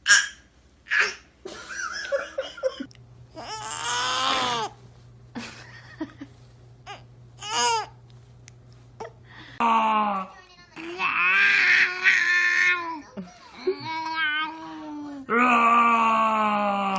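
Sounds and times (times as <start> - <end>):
baby babbling: 3.4 - 4.8, 6.9 - 8.0, 10.7 - 13.0.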